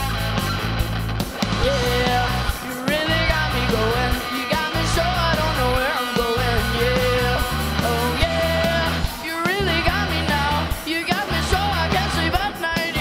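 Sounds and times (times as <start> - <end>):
rock band playing live: 0.0 - 13.0.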